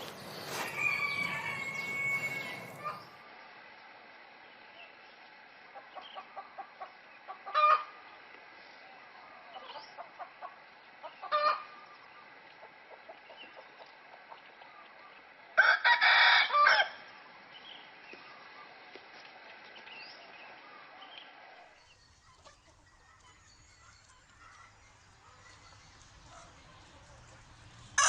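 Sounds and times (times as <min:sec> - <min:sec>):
rooster crowing: 0:00.0 - 0:03.1, 0:15.6 - 0:17.0
rooster clucking: 0:00.0 - 0:03.2, 0:06.6 - 0:07.9
rooster sharp calls: 0:00.0 - 0:03.2.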